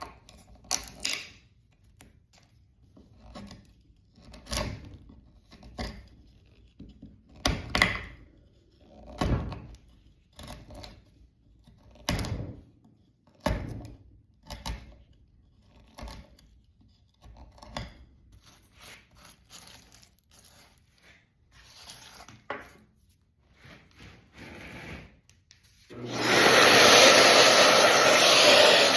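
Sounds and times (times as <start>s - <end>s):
dust extractor rushing: 25.9s - 28.9s.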